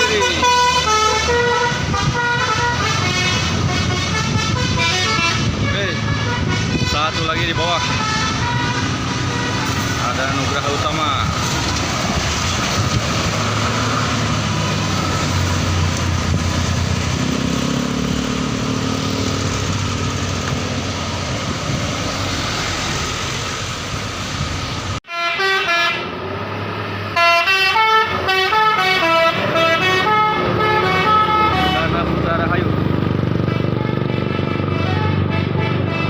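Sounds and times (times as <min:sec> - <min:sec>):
musical bus horn tune: 0:00.0 - 0:09.9, 0:25.0 - 0:26.2, 0:27.1 - 0:32.0, 0:33.4 - 0:36.0
bus engine and road noise: 0:00.0 - 0:36.0.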